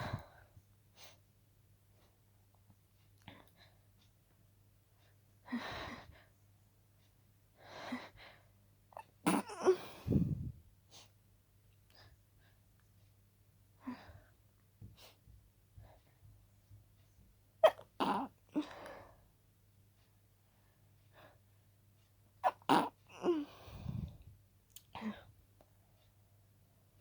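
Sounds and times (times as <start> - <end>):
person stifling sneeze: 9.2 - 9.8, 17.6 - 18.3, 22.4 - 23.4
person breathing: 9.6 - 11.1, 23.3 - 24.3.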